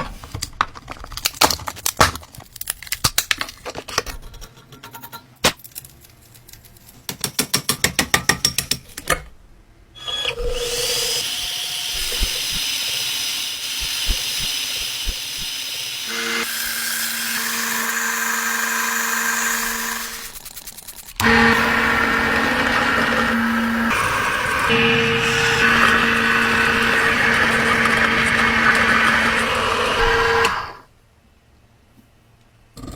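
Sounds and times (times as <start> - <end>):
power tool whining: 10.0 - 20.4, 21.2 - 30.9.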